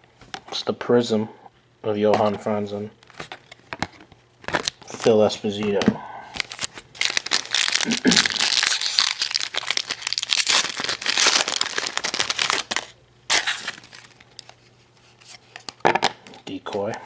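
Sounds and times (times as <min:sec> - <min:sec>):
foil wrapper crinkling: 0:06.4 - 0:14.6.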